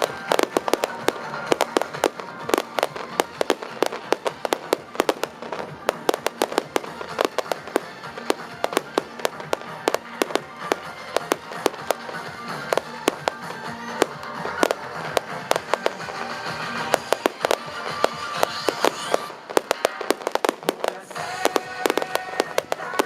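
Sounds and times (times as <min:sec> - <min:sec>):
fireworks crackling: 0:00.0 - 0:23.0
music playing: 0:00.0 - 0:23.0.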